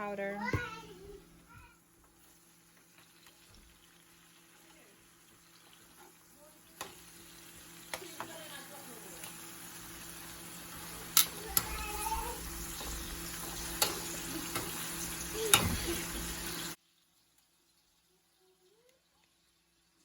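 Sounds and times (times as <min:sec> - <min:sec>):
shrimp sizzling in butter: 0:02.0 - 0:20.0.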